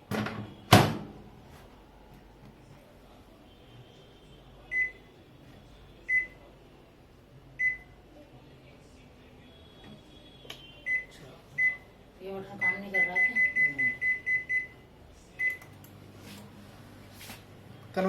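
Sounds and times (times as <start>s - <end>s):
microwave control panel beeping: 12.6s - 14.8s, 15.4s - 15.7s.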